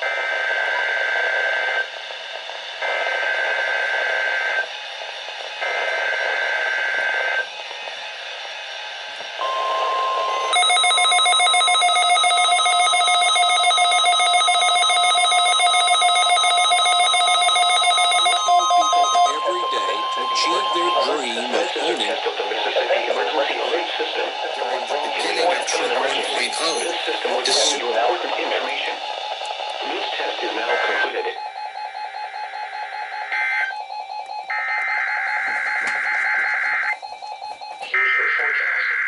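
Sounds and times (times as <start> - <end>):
harsh attention signal: 9.4 - 22.1
digital header data tones: 9.4 - 28.9.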